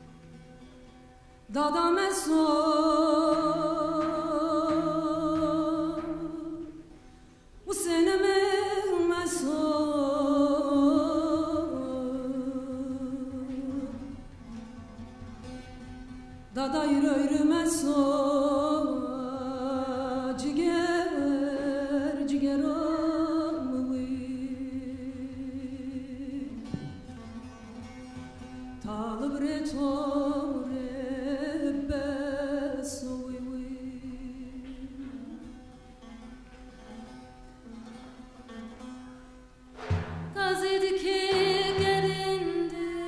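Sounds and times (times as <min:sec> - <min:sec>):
plucked lute: 0:00.0 - 0:43.0
woman singing: 0:01.5 - 0:07.0, 0:07.6 - 0:14.2, 0:16.5 - 0:27.1, 0:28.7 - 0:35.7, 0:40.3 - 0:43.0.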